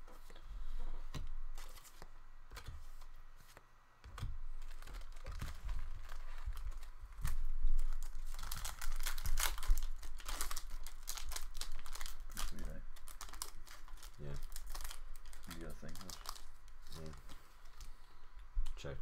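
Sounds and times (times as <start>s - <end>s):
cards being handled: 0.1s - 18.0s
card pack wrapper crinkling: 4.5s - 17.4s.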